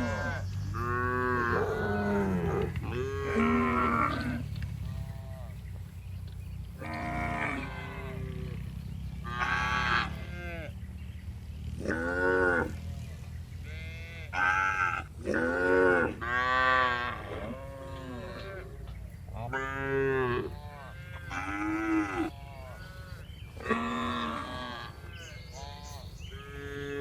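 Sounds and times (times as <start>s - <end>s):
cattle mooing: 0.0s - 5.7s, 6.8s - 10.8s, 11.8s - 18.8s, 19.4s - 27.0s
steady low hum: 0.0s - 14.2s.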